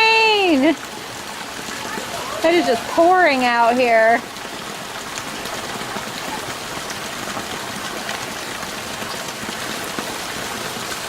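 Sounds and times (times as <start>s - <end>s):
heavy rain pouring: 0.0s - 11.0s
raindrops ticking close by: 0.0s - 11.0s.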